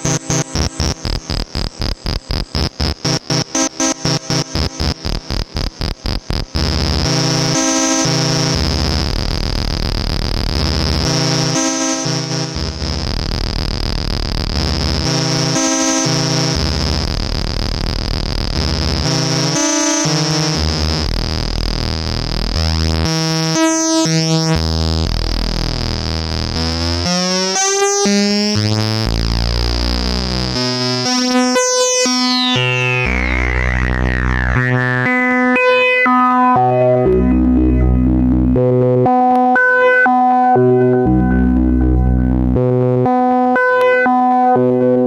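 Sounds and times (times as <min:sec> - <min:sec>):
synthesizer low notes: 0:00.0 - 0:45.0
falling filter sweep: 0:31.4 - 0:39.1.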